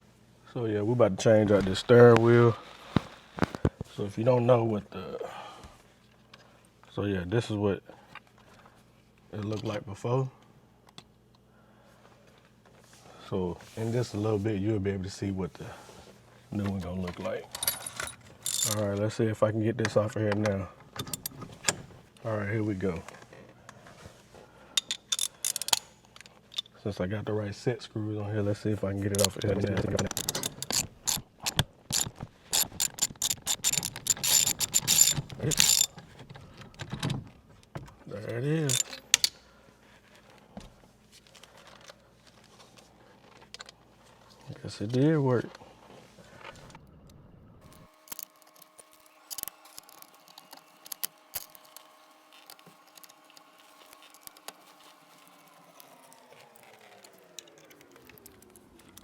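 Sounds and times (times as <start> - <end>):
ratchet clicking on metal: 17.6 - 18.8, 24.8 - 26.6, 29.1 - 36.0, 38.7 - 39.4.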